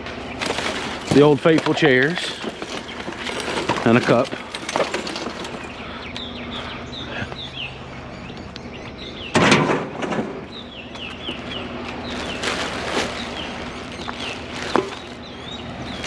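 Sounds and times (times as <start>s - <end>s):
loud clatter: 0.2s - 5.8s, 12.1s - 15.2s
bird chirping: 0.2s - 9.5s, 10.4s - 16.0s.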